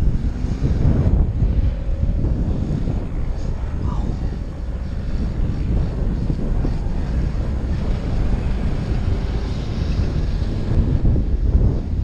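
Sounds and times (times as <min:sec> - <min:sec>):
strong wind buffeting microphone: 0:00.0 - 0:12.0.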